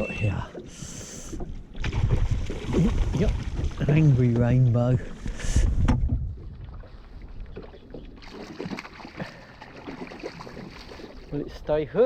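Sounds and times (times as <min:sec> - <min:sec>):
water lapping against boat hull: 0:00.0 - 0:12.0
wind buffeting microphone: 0:01.7 - 0:08.0.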